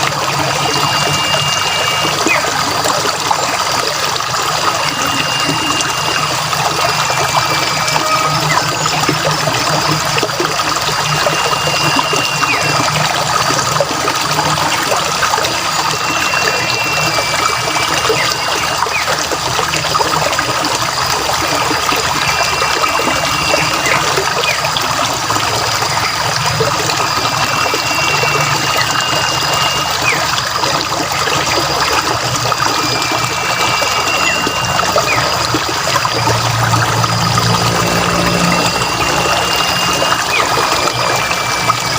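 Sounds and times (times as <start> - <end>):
water trickling: 0.0 - 41.9
bird whistled call: 0.5 - 3.6, 4.7 - 10.0, 10.9 - 13.4, 14.4 - 19.2, 21.5 - 25.1, 25.8 - 30.9, 31.5 - 36.1, 37.9 - 41.9.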